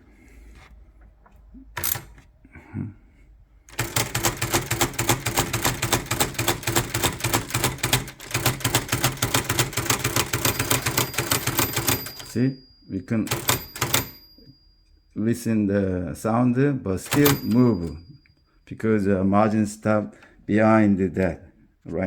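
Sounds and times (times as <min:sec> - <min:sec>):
typewriter bell ding: 0:01.8 - 0:02.1, 0:03.7 - 0:15.0, 0:17.0 - 0:18.3
typewriter escapement clicks: 0:01.8 - 0:02.2, 0:17.1 - 0:17.8.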